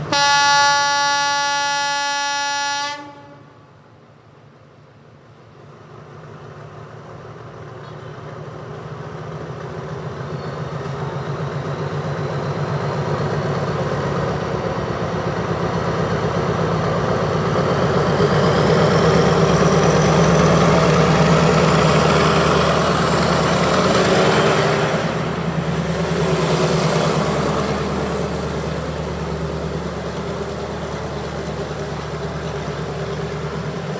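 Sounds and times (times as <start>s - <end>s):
locomotive horn blast: 0.1s - 3.7s
diesel engine under power: 8.8s - 33.9s.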